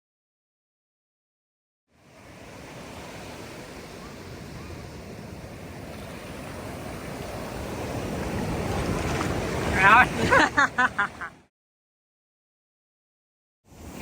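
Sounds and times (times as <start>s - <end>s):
ocean surf: 1.9s - 11.5s, 13.7s - 14.0s
wind: 1.9s - 11.5s, 13.6s - 14.0s.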